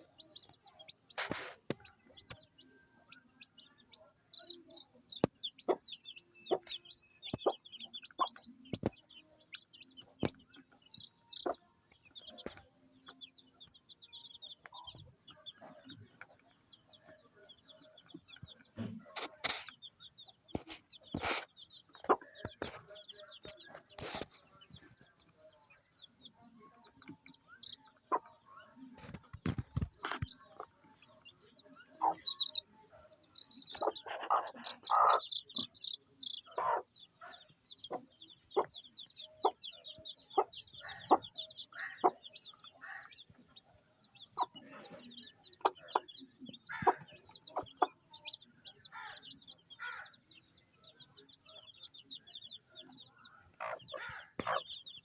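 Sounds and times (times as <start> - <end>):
chicks peeping: 0.0 - 55.0
hen clucking: 4.5 - 11.6, 27.8 - 32.7, 33.4 - 50.2, 51.4 - 55.0.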